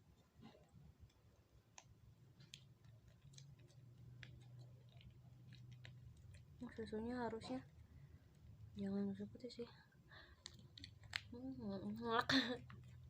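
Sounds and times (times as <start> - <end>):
faint low hum: 0.0 - 13.0
plastic bag clicks and ticks: 1.0 - 6.4.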